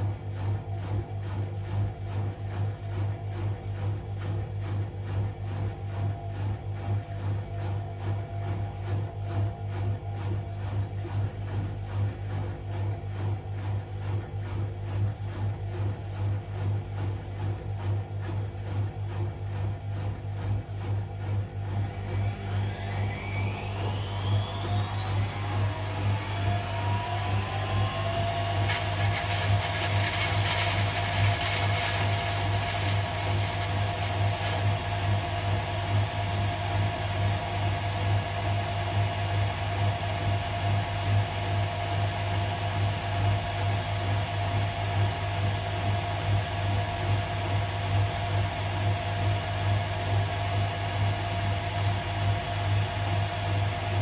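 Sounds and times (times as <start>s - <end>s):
pulsing low hum of drum: 0.0s - 41.4s
washing machine motor whine: 0.0s - 54.0s.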